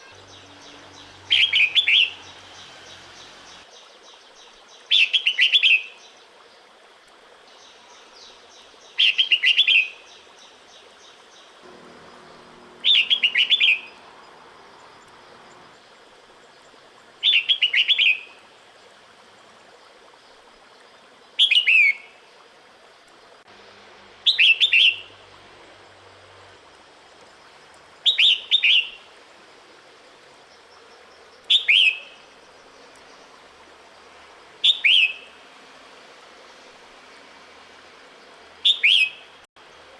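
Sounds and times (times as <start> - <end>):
bird giving loud calls: 12.3 - 15.7.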